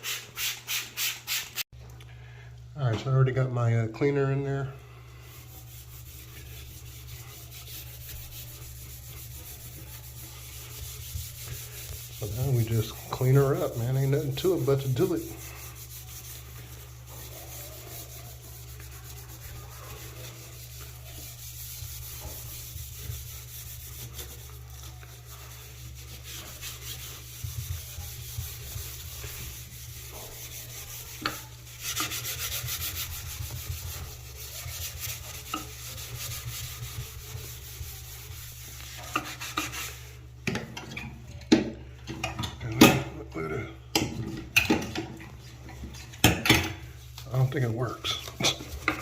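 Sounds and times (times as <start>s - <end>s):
brush scrubbing surface: 5.1s - 40.3s, 46.9s - 49.0s.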